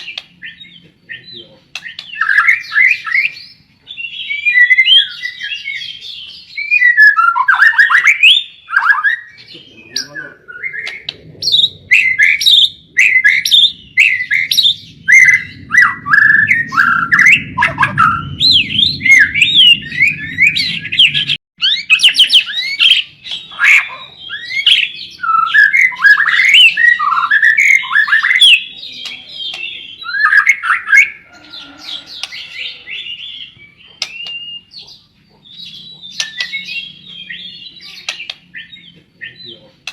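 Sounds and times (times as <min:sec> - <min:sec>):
bird singing whistled phrases: 0:00.0 - 0:34.8, 0:35.6 - 0:39.6
low rumbling noise: 0:09.6 - 0:21.4.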